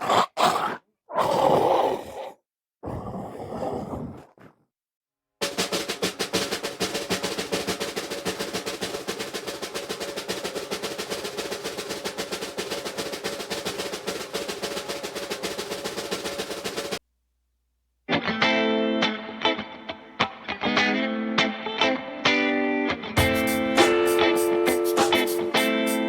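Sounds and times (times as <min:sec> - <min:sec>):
snare drum roll: 0:05.4 - 0:17.0, 0:23.2 - 0:26.0.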